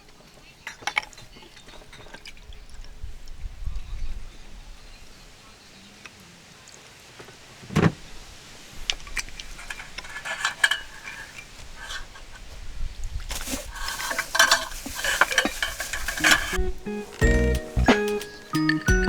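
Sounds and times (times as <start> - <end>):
metal utensils clinking on cookware: 9.4 - 12.1, 13.3 - 17.2.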